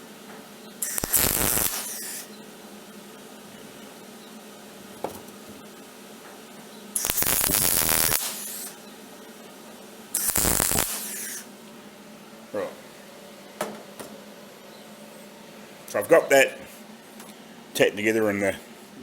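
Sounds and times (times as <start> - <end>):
steady background hum: 0.0 - 19.0
electric welder tack welds: 0.8 - 2.4, 7.0 - 8.8, 10.1 - 11.5.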